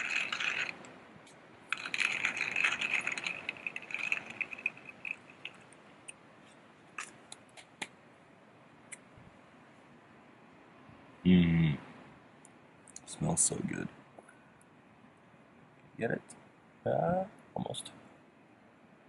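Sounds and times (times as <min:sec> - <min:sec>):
coffee grinder grinding beans: 0:00.0 - 0:00.8, 0:01.7 - 0:05.6.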